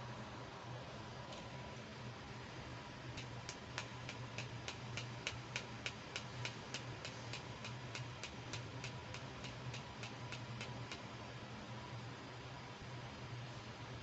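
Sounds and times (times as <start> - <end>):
low steady hum: 0.0 - 14.0
steady clicking: 3.1 - 11.1.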